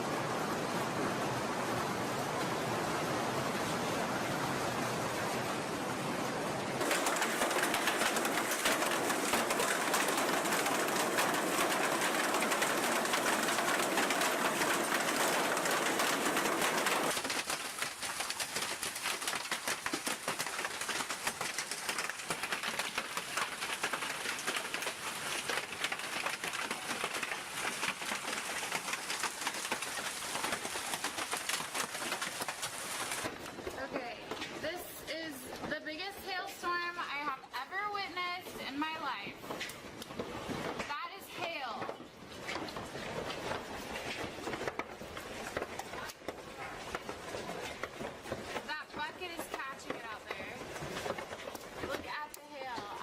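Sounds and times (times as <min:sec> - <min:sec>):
hailstones clattering: 0:06.8 - 0:33.5, 0:42.5 - 0:53.0.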